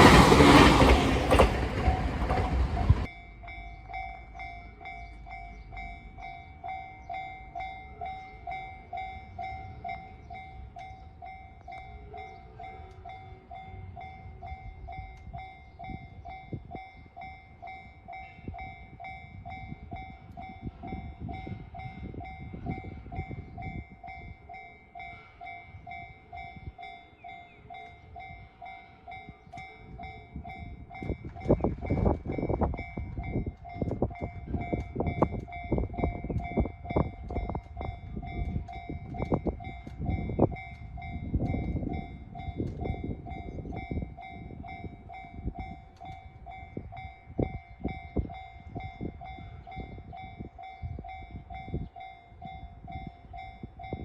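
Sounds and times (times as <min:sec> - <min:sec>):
wheels clacking on rail joints: 0:00.0 - 0:13.6, 0:26.8 - 0:49.8
train rumbling past: 0:00.0 - 0:54.0
two-tone crossing bell: 0:00.8 - 0:54.0.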